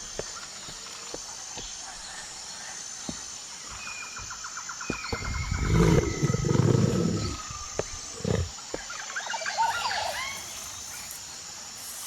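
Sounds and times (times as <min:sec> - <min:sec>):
birds chirping: 0:03.6 - 0:12.0
big cat roaring: 0:05.3 - 0:07.5, 0:08.1 - 0:08.6
big cat grunt: 0:05.5 - 0:07.5, 0:08.1 - 0:08.6.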